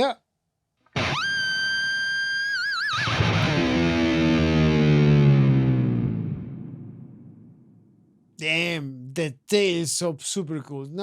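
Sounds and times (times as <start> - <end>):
distorted electric guitar with vibrato: 0.9 - 7.6.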